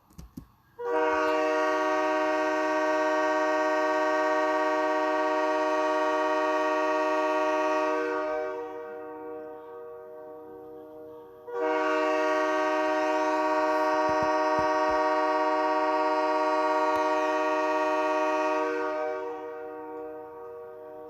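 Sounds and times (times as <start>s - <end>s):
goal horn blast: 0.8s - 10.3s, 11.5s - 20.9s.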